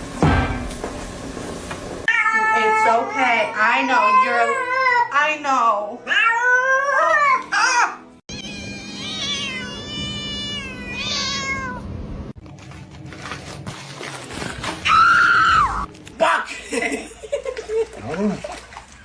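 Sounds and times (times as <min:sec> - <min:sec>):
cat meowing: 0:08.3 - 0:11.9.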